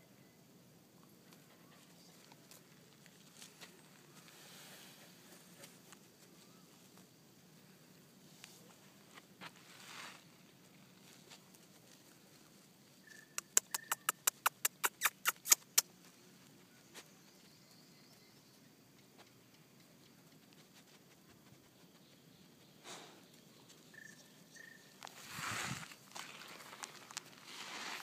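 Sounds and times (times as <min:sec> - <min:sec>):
soft noise: 0:01.1 - 0:13.4, 0:24.6 - 0:28.0.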